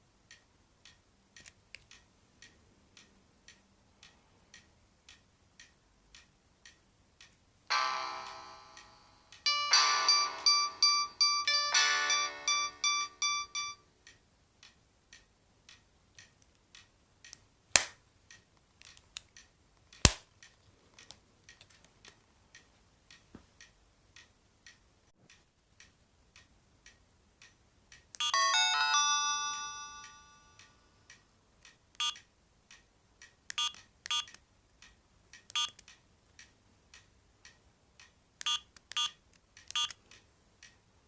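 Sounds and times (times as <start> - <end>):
soft regular ticks: 0.1 - 7.6, 14.0 - 28.3, 30.0 - 40.9
polyphonic ringtone melody: 7.7 - 13.8, 28.3 - 30.7
short chiming melody: 7.7 - 13.8
sharp clicks: 14.1 - 22.2.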